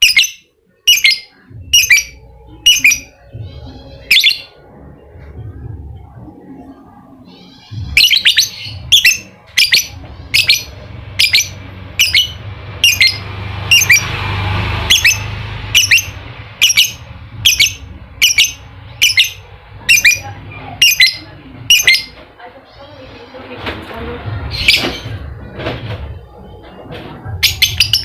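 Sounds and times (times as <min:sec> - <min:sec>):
faint low hum: 0:00.6 - 0:28.0
lovebird shrill calls: 0:07.4 - 0:14.0, 0:14.9 - 0:20.2.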